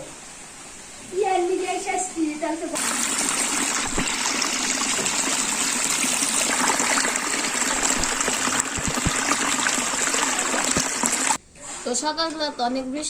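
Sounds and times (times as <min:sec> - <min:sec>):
rushing water: 0:02.8 - 0:11.4.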